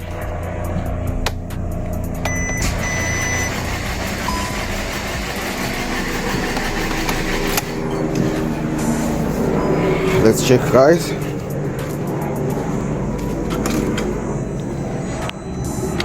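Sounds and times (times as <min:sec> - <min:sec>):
engine cranking without firing: 0:00.0 - 0:15.3.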